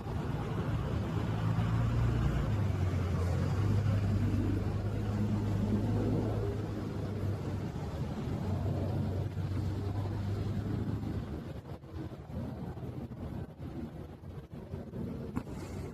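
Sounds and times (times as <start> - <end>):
low engine drone: 0.0 - 15.9.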